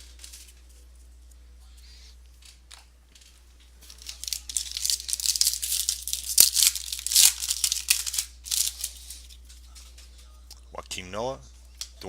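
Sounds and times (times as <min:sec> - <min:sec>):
wrapper tearing and crinkling: 0:03.9 - 0:09.4.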